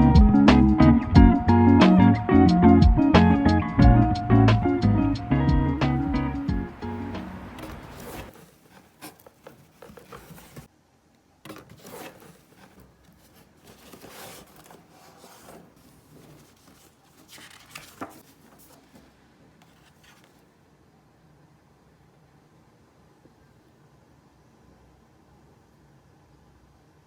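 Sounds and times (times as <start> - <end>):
background music: 0.0 - 8.2
objects being handled: 6.8 - 10.7, 11.4 - 20.5.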